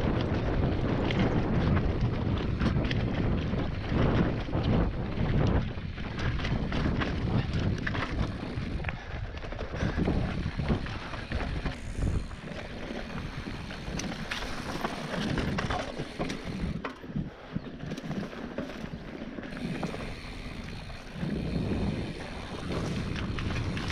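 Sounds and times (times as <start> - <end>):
bike rattling: 0.0 - 23.9
bike tyres rumbling over ground: 0.0 - 23.9
wind buffeting microphone: 0.0 - 23.9.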